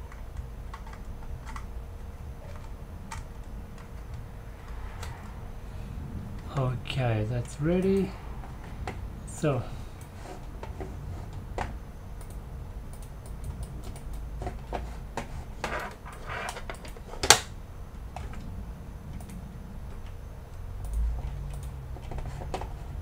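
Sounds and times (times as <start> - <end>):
keyboard and mouse clicks: 0.0 - 1.7, 2.4 - 5.3, 10.0 - 17.4, 19.1 - 20.2, 20.8 - 22.7
low steady hum: 0.0 - 23.0.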